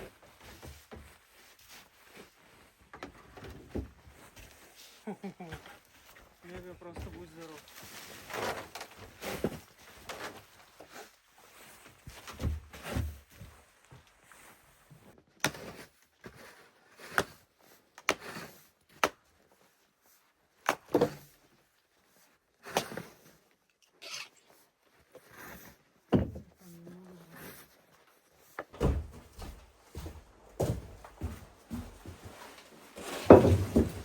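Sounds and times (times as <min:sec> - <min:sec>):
objects knocking and clattering: 0:33.0 - 0:34.0.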